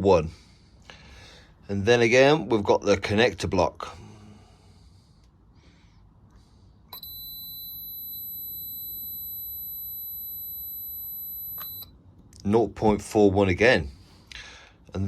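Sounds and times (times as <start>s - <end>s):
multimeter continuity beep: 6.9s - 11.9s.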